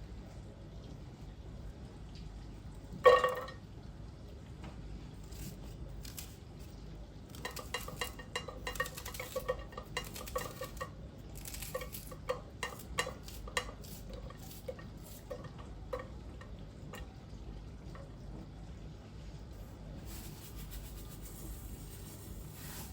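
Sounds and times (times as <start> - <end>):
dishes and utensils clinking: 3.0 - 3.6, 7.3 - 17.2.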